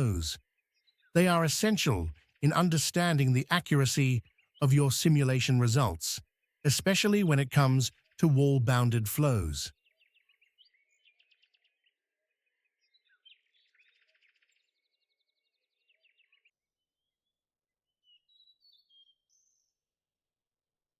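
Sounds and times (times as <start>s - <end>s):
faint bird chirps and trills: 0.4s - 1.1s, 9.8s - 20.0s.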